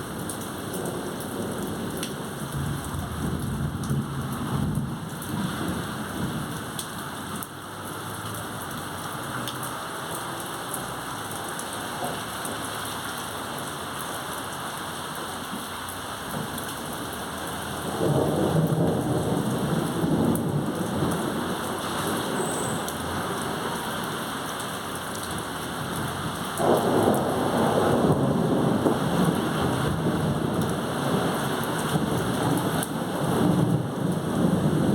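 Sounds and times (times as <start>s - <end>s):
heavy rain: 0.0s - 34.9s
thunder rumbling: 0.8s - 6.7s, 17.6s - 22.4s, 25.8s - 34.9s.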